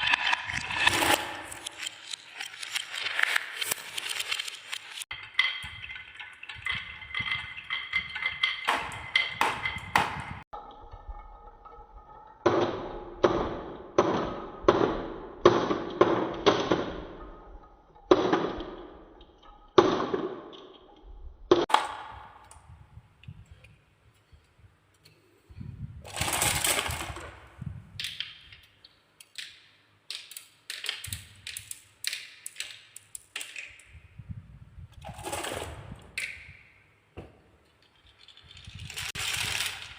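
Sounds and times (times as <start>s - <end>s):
marbles rolling down marble run: 0.0s - 12.6s, 26.0s - 28.3s, 35.0s - 36.4s, 38.1s - 39.9s.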